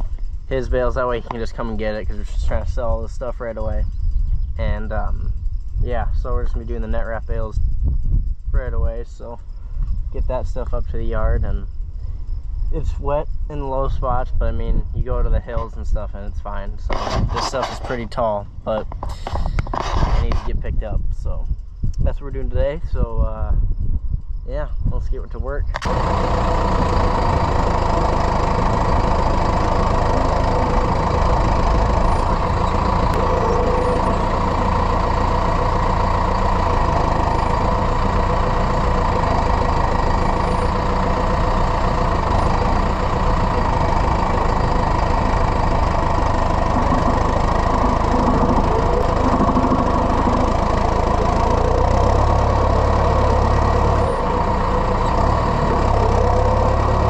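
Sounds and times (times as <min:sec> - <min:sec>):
tractor engine running: 0:00.0 - 0:22.8, 0:25.3 - 0:57.0.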